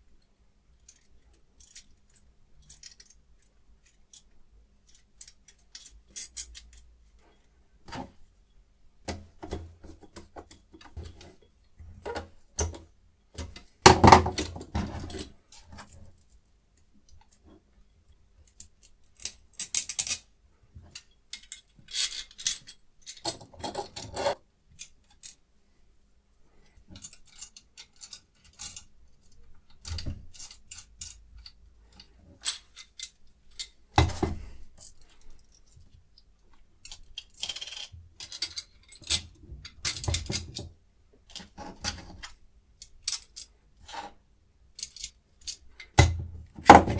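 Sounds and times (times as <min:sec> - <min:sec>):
metal parts clicking and clinking: 0:00.8 - 0:06.9, 0:18.4 - 0:25.5, 0:26.8 - 0:40.7, 0:41.3 - 0:44.1, 0:44.7 - 0:46.8.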